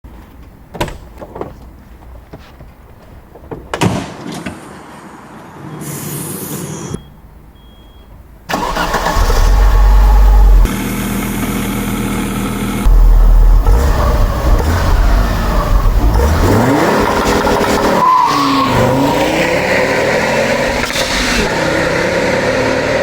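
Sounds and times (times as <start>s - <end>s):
hiss: 5.8s - 7.0s
short high beeps: 7.0s - 8.1s
car engine revving and idling: 8.6s - 23.0s.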